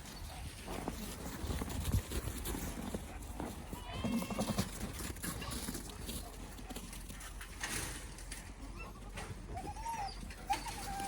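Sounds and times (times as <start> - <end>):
goats rustling: 0.0 - 8.6.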